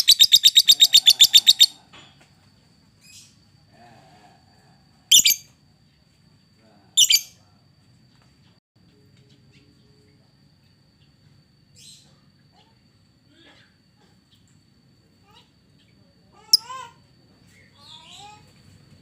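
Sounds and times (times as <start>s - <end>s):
lovebird chirping: 0.0s - 1.8s, 5.1s - 5.5s, 7.0s - 7.4s.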